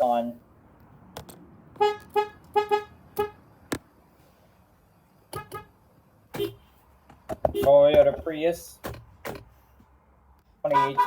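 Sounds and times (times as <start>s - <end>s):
car horn honks: 1.8s - 3.4s, 5.3s - 6.8s, 7.5s - 7.7s, 10.7s - 11.0s.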